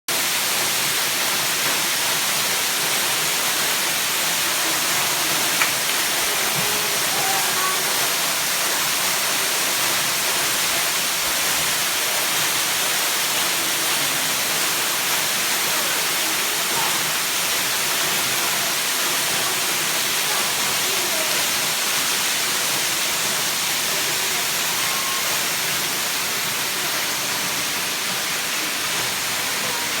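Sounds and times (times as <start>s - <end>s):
waterfall pouring: 0.1s - 30.0s.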